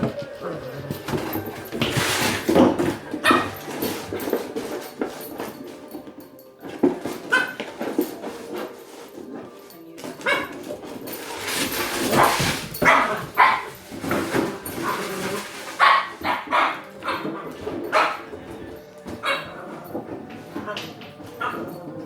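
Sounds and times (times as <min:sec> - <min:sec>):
rustling: 0:00.0 - 0:22.0
puppy barking: 0:03.2 - 0:03.7, 0:07.3 - 0:07.7, 0:10.2 - 0:10.6, 0:12.1 - 0:13.8, 0:15.8 - 0:18.4, 0:19.2 - 0:19.9.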